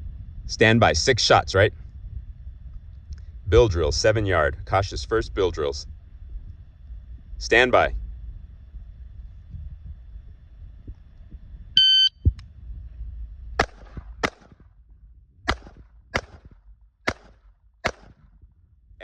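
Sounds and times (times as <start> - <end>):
shot timer beep: 11.8 - 12.2
pistol shots: 13.6 - 14.6, 15.5 - 18.2.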